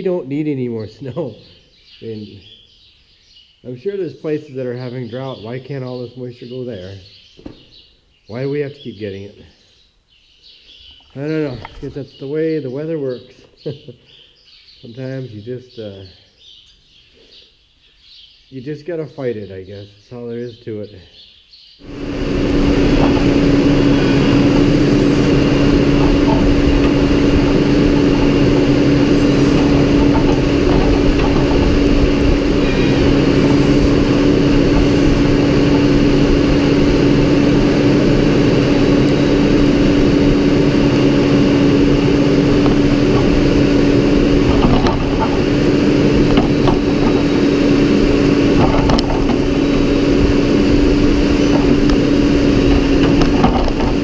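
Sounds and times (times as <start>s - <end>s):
tractor diesel engine running: 21.8s - 54.0s.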